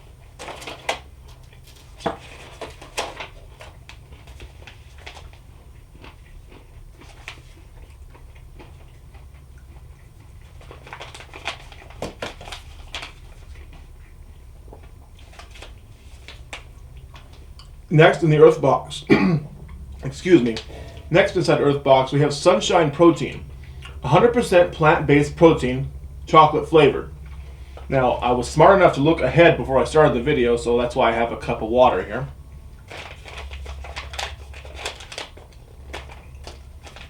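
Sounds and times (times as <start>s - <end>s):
steady low hum: 0.0s - 37.0s
crunchy snack chewing: 3.6s - 17.7s.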